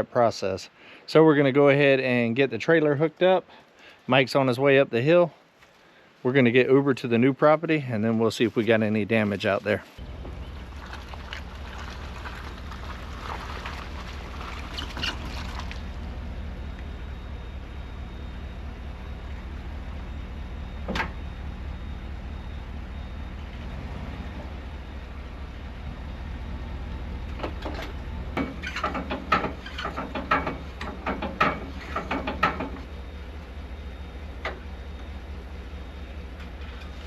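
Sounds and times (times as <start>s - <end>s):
engine idling: 10.0s - 37.0s
metallic clanks and knocks: 27.4s - 32.9s.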